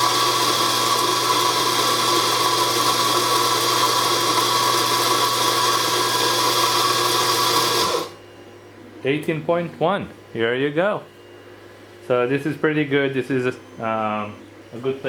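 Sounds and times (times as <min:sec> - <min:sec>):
coffee grinder grinding beans: 0:00.0 - 0:08.2.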